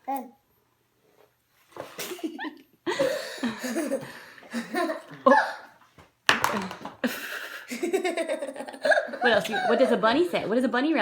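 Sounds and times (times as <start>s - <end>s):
breathy laughter: 2.0s - 5.7s, 7.0s - 10.1s.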